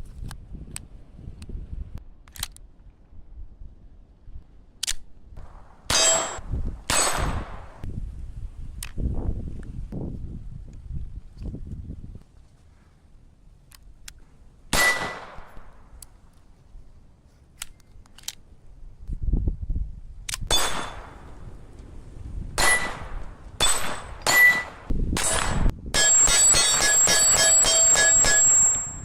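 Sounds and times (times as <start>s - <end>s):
pistol shots: 5.4s - 7.8s, 14.7s - 15.8s, 20.5s - 21.3s, 22.6s - 28.5s.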